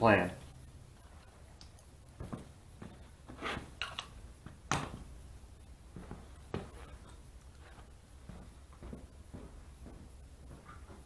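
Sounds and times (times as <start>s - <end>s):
low steady hum: 0.0s - 11.0s
objects knocking and rustling: 2.1s - 5.2s, 5.9s - 11.0s.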